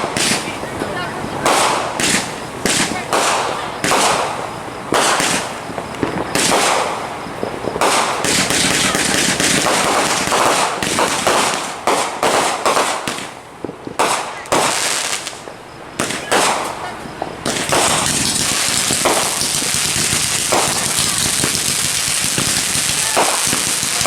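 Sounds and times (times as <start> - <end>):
fireworks bangs: 0.0 - 24.0
fireworks crackling: 0.0 - 24.0.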